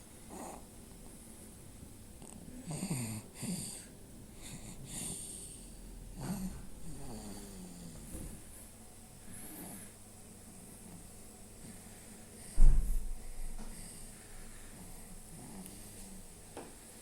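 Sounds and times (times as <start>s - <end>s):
child snoring: 0.3s - 0.7s, 2.6s - 8.1s, 9.3s - 10.0s, 15.3s - 15.9s.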